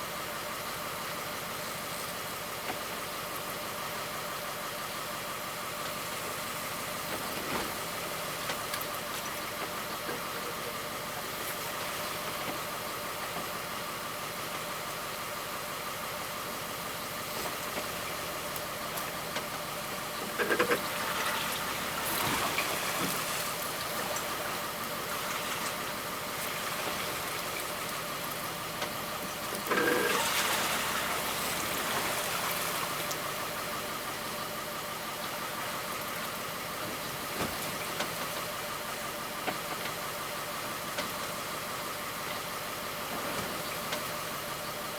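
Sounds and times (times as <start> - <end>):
boat motor drone: 20.2 - 34.7.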